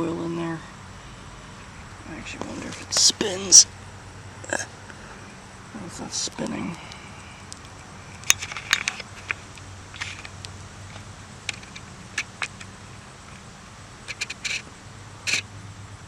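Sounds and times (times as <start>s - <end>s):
metal parts clicking and scraping: 8.2s - 12.7s, 14.1s - 14.7s.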